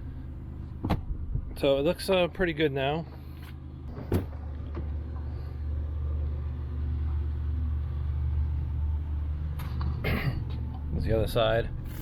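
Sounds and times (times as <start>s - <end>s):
low steady rumble: 0.0s - 12.0s.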